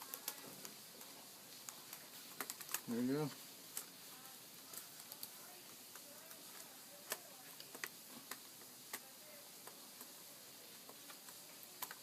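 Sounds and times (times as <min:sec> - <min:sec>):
plastic keyboard clicks: 0:11.8 - 0:12.0.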